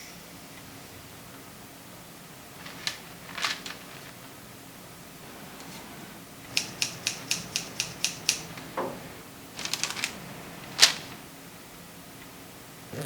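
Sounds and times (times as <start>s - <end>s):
sharp mechanical clacks: 6.5s - 10.2s.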